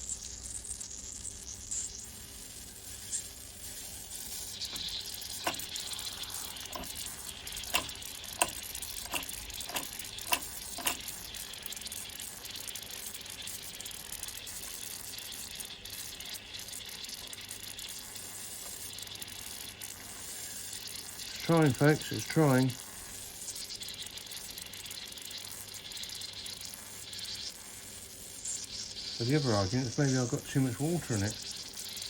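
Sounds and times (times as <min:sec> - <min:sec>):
toy steam engine hissing: 0:00.0 - 0:32.0
sharp ticks: 0:04.6 - 0:11.2.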